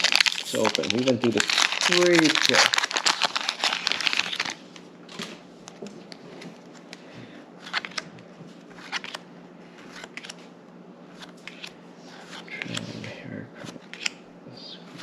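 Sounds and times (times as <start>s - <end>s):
foil wrapper crinkling: 0.0s - 4.6s.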